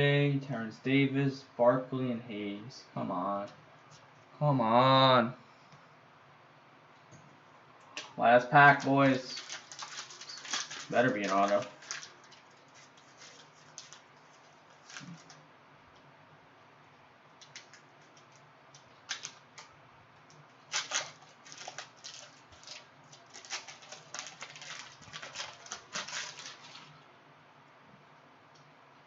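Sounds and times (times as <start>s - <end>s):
wrapper crinkling and crackling: 8.6s - 15.4s, 17.4s - 19.7s, 20.6s - 27.0s.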